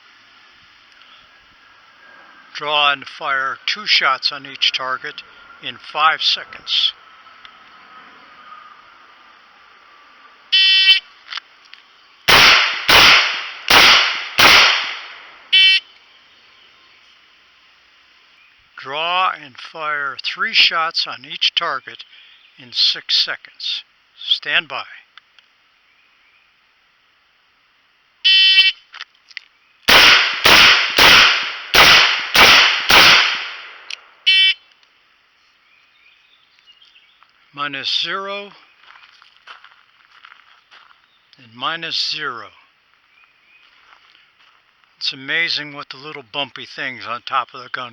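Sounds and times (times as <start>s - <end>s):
revolver shots ringing out: 12.3s - 15.2s.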